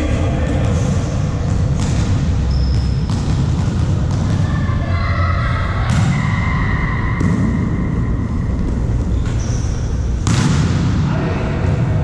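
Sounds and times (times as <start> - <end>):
low hall rumble: 0.0 - 12.0
volleyball smacks: 10.2 - 10.9.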